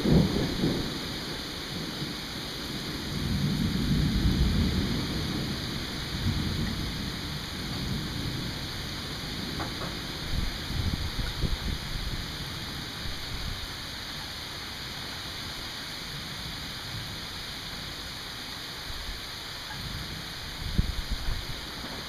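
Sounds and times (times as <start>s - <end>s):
distant rolling thunder: 0.0s - 14.2s, 18.8s - 22.0s
rain hissing: 0.0s - 22.0s.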